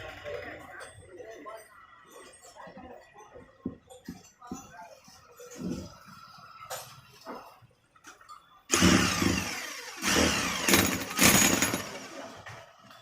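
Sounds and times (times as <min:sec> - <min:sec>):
electric demolition hammer running: 0:08.7 - 0:12.3.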